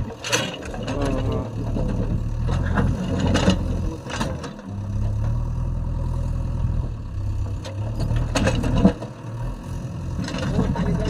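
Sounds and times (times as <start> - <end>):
diesel engine running: 0.0 - 11.0.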